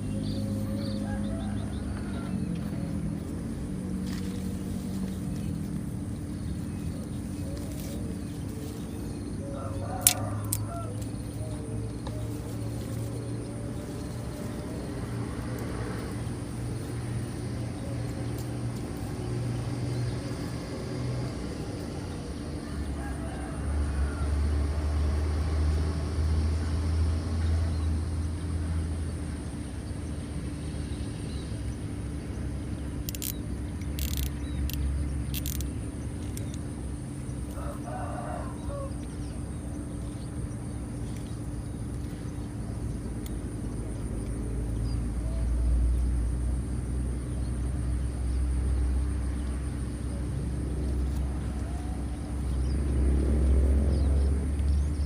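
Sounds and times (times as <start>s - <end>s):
low outdoor rumble: 0.0s - 55.0s
rooster crowing: 0.2s - 3.1s, 9.4s - 11.7s, 22.0s - 25.6s, 37.5s - 39.6s.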